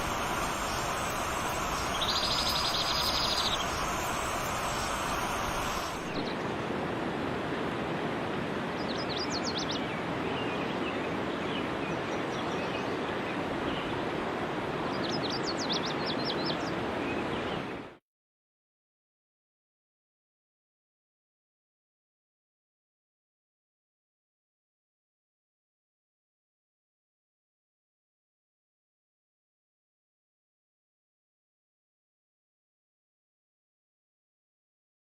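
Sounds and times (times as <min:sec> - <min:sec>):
background hiss: 0:00.0 - 0:06.3
buzzing bird trill: 0:00.0 - 0:06.3
sharp high bird chirps: 0:00.0 - 0:06.3.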